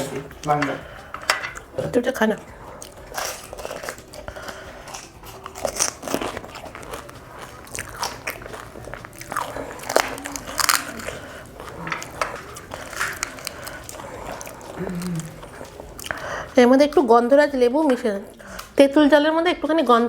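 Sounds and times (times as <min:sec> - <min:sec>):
wet chewing: 0:00.0 - 0:18.9
crisp shells crunching: 0:02.8 - 0:16.3.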